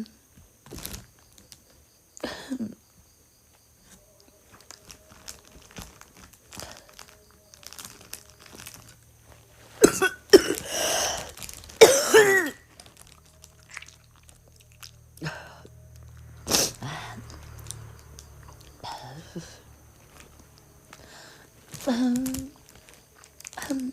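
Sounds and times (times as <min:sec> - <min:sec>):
young woman coughing: 0:02.2 - 0:02.8, 0:09.8 - 0:11.2, 0:11.8 - 0:12.6.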